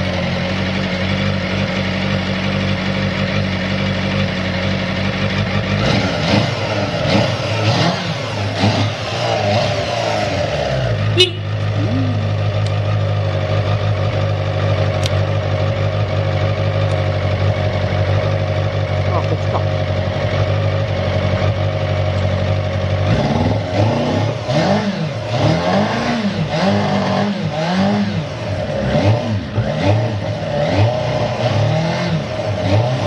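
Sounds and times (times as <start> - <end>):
motorcycle engine idling and revving: 0.0 - 33.0
sharp click: 15.0 - 15.2.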